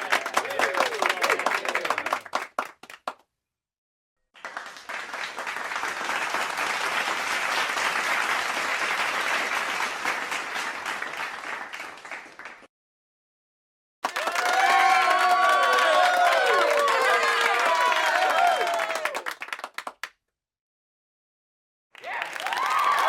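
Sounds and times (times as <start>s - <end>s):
crowd applause: 0.0s - 3.2s, 4.4s - 12.7s, 14.0s - 20.1s, 22.0s - 23.0s
scattered claps: 0.0s - 3.2s, 4.3s - 12.7s, 14.0s - 20.1s.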